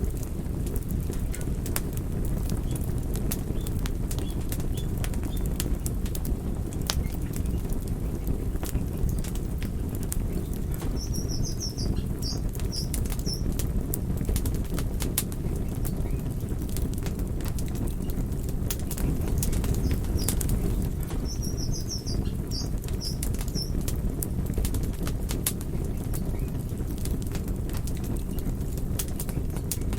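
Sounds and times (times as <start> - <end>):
fire low roar: 0.0 - 29.9
wood fire crackling and popping: 0.0 - 29.9
high bird chirps: 10.9 - 13.4, 21.2 - 23.8.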